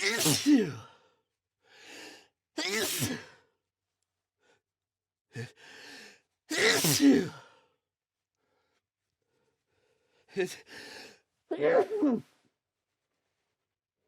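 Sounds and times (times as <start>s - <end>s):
person sneezing: 0.0s - 0.8s, 2.6s - 3.3s, 6.5s - 7.4s.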